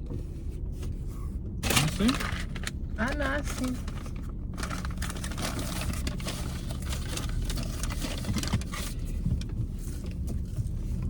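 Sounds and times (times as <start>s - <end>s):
car hum: 0.0s - 11.0s
paper bag rustling: 1.6s - 9.1s.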